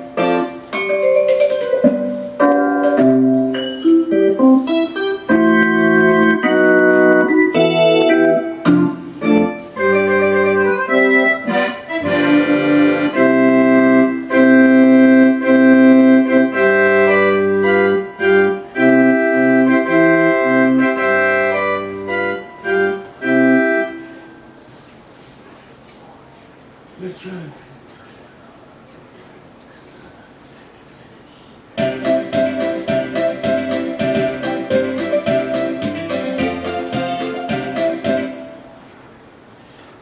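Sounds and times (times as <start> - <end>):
electronic keyboard melody: 0.0 - 24.6, 31.8 - 38.9.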